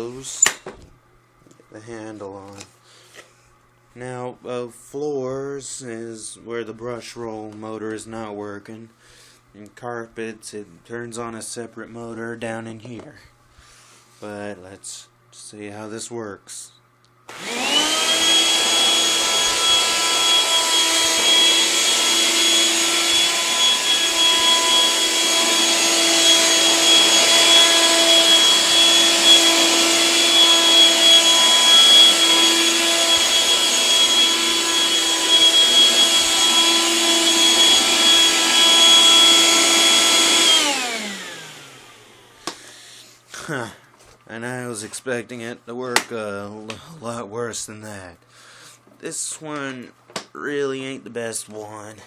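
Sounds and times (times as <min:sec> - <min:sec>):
vacuum cleaner motor whining: 0:17.3 - 0:42.7.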